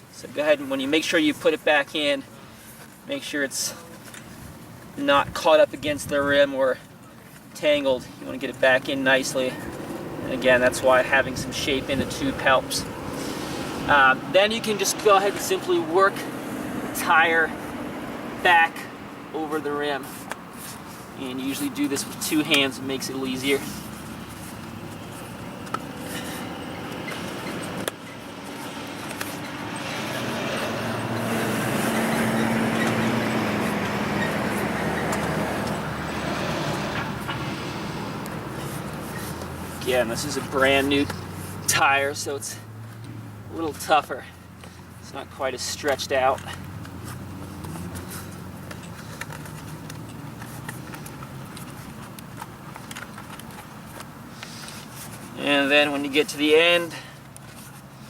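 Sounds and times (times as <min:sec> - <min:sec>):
tire rubbing on rim: 0:07.3 - 0:58.0
motor vehicle passing by: 0:08.3 - 0:45.1, 0:45.9 - 0:58.0.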